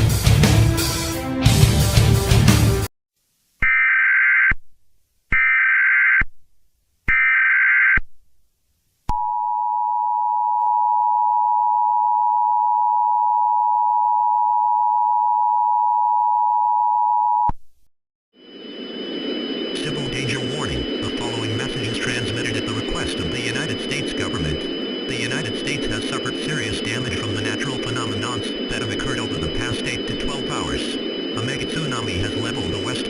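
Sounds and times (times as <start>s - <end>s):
buzzy digital data bursts: 18.5s - 33.0s.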